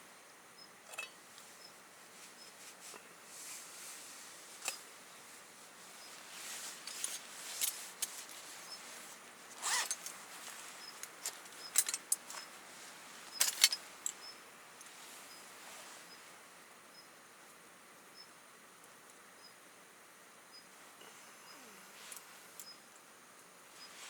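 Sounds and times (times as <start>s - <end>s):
zipper rasp: 9.6s - 10.0s
gear rustling and clicking: 9.6s - 12.5s
faint high chirps: 20.5s - 22.9s.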